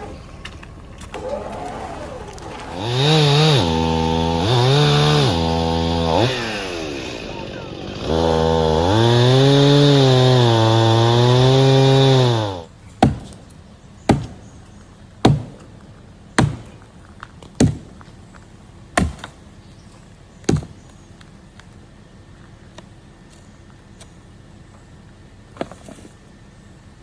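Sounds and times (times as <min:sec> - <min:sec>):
chainsaw cutting wood: 0:00.0 - 0:14.4, 0:15.2 - 0:15.7, 0:16.4 - 0:16.8, 0:17.6 - 0:18.1, 0:19.0 - 0:19.4, 0:20.5 - 0:20.8
sharp knocks on wood: 0:13.0 - 0:13.4, 0:14.1 - 0:14.4, 0:15.2 - 0:15.6, 0:17.6 - 0:18.0, 0:20.5 - 0:20.8.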